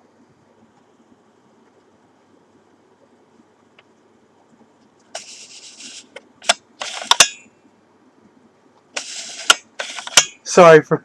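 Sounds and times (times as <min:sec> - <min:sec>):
plastic lever scraping slide: 0:05.2 - 0:07.3, 0:09.0 - 0:10.3
sharp clicks of viewer reel: 0:05.2 - 0:07.4, 0:09.0 - 0:10.3.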